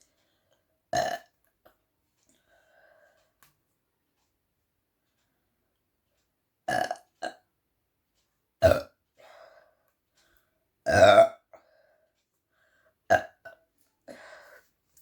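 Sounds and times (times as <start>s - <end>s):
woman burping: 1.0s - 1.3s, 8.6s - 8.9s, 10.9s - 11.5s, 13.1s - 13.6s.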